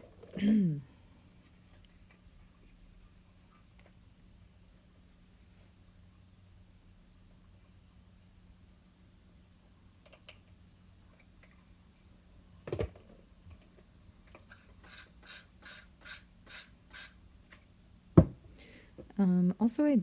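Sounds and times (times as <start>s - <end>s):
stick scraping paint in a cup: 14.5s - 17.2s
knock: 18.2s - 18.4s
loud thump: 18.2s - 18.4s.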